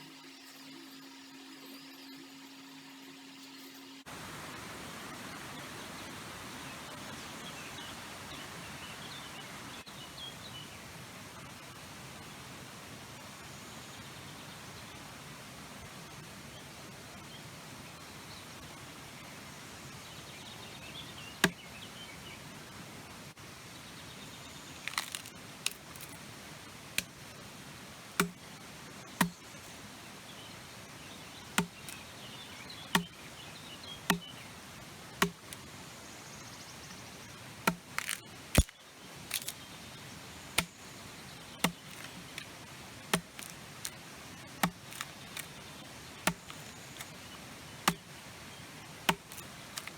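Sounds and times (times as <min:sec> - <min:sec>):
axe chopping wood: 0:21.4 - 0:21.6, 0:24.8 - 0:26.2, 0:27.0 - 0:27.2, 0:28.2 - 0:28.5, 0:29.2 - 0:29.5, 0:31.5 - 0:32.0, 0:32.9 - 0:33.2, 0:34.0 - 0:34.4, 0:35.2 - 0:35.7, 0:37.6 - 0:38.7, 0:39.3 - 0:39.6, 0:40.6 - 0:40.8, 0:41.6 - 0:48.2, 0:49.0 - 0:49.9.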